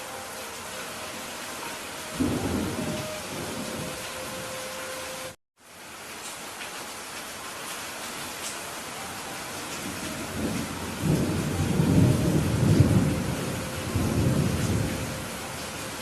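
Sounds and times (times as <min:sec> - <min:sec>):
heavy rain: 0:00.0 - 0:16.0
rolling thunder rumble: 0:02.1 - 0:04.6, 0:09.8 - 0:16.0.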